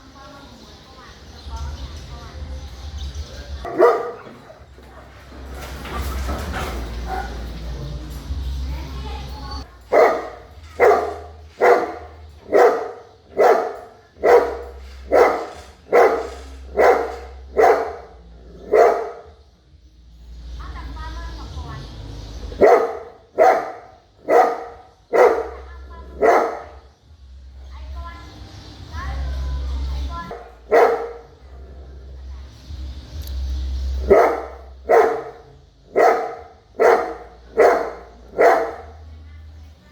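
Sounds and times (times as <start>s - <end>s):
big dog barking: 3.6s - 8.6s, 9.6s - 19.5s, 22.4s - 27.0s, 29.2s - 32.6s, 33.6s - 39.5s.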